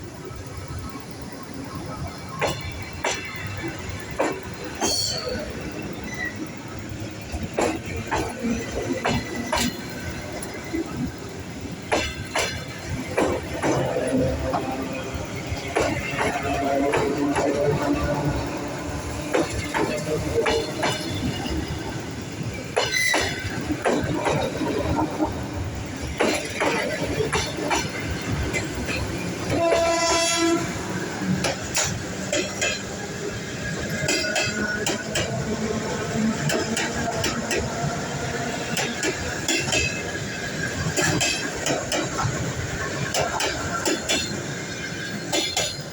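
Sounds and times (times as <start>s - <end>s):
train rumble: 0.0s - 45.9s
wheels clicking over rail joints: 0.0s - 45.9s
train wheel knocks: 7.3s - 11.1s, 11.9s - 21.8s, 22.7s - 30.6s
train horn: 29.5s - 31.0s.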